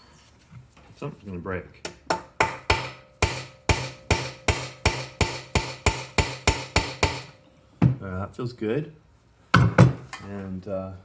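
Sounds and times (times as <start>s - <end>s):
hammer striking metal: 1.9s - 7.5s.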